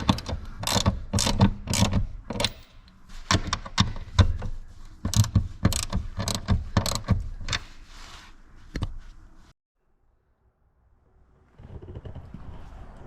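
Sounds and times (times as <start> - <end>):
ratchet wrench clicking: 0.0 - 2.6, 5.1 - 7.1.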